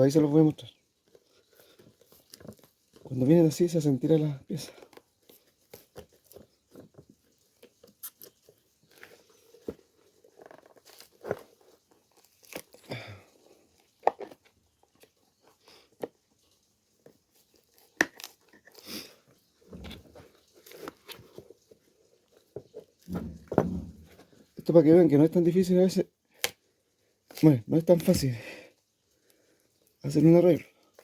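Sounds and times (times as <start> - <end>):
shoe heel creaking and snapping: 7.7 - 12.9, 19.7 - 21.4, 22.5 - 24.4.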